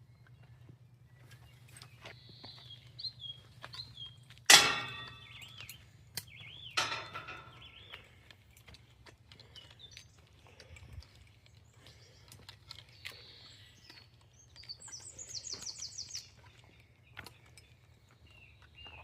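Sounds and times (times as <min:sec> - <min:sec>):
low steady hum: 0:00.0 - 0:18.6
small birds chirping: 0:00.0 - 0:19.0
sharp ringing bangs: 0:04.5 - 0:05.6, 0:06.8 - 0:07.6.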